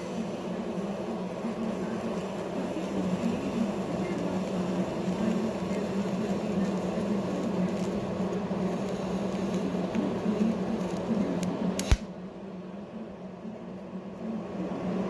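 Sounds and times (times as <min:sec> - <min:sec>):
welding arc buzzing: 0:00.0 - 0:12.2
sharp click: 0:11.4 - 0:12.1.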